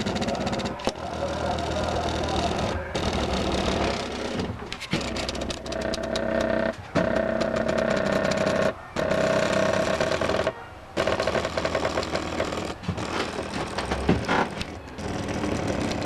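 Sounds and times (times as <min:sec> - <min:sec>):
plotter motors whining and ticking: 0:00.0 - 0:10.2.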